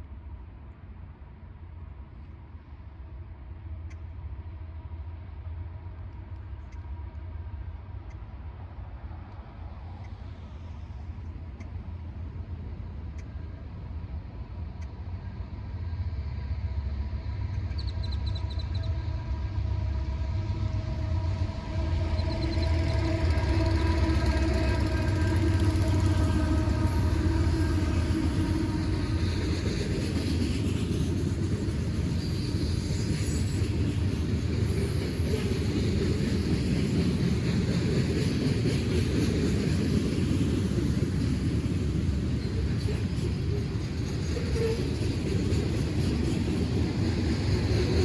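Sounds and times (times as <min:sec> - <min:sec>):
train rumbling past: 0:00.0 - 0:48.0
train horn tone: 0:18.6 - 0:29.4.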